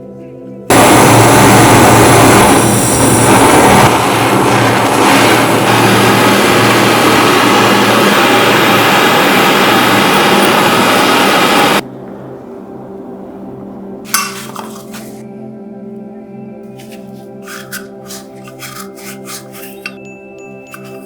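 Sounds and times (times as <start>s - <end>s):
workshop tool rushing and hissing: 16.8s - 20.0s.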